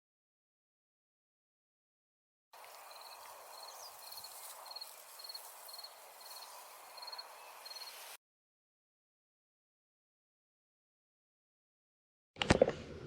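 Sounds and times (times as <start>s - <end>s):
cricket chirping: 2.6s - 8.2s
faint outdoor hiss: 2.6s - 8.2s.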